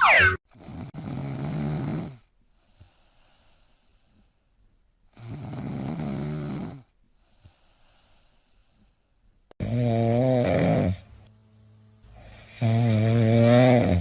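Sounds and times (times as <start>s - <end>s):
person snoring: 0.5s - 2.3s, 5.1s - 6.9s, 9.6s - 11.1s, 12.1s - 14.0s.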